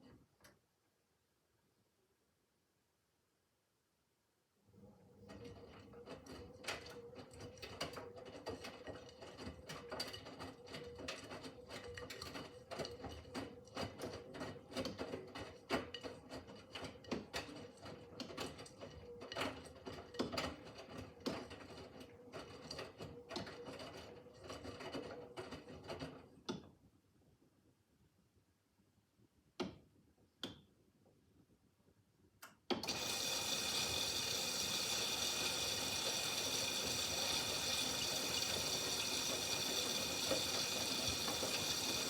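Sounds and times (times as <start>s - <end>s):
washing machine motor hum: 32.7s - 42.0s
laundry clicking and rattling in drum: 32.8s - 42.0s.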